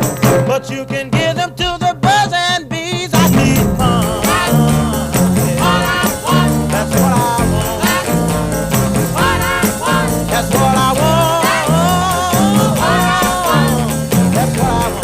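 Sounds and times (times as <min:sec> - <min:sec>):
person singing: 0:00.6 - 0:15.0
song with beat and bass: 0:03.1 - 0:15.0.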